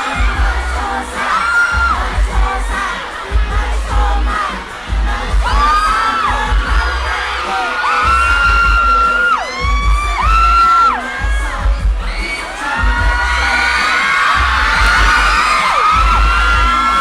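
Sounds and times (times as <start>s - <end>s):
crowd screaming: 0.0s - 17.0s.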